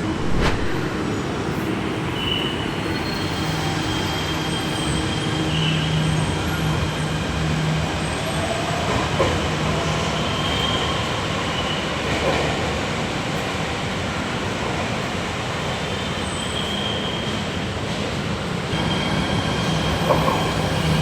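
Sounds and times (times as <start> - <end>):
faint high squeal: 16.0 - 17.5.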